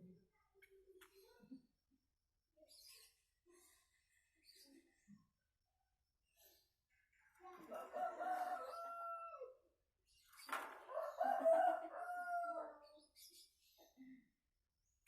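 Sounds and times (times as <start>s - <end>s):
rooster crowing: 7.7s - 9.5s, 10.9s - 12.8s.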